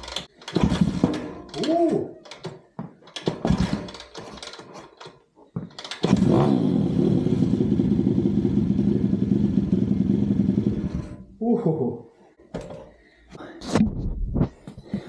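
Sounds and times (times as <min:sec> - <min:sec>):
pit bike engine sputtering and running: 0:05.8 - 0:11.3.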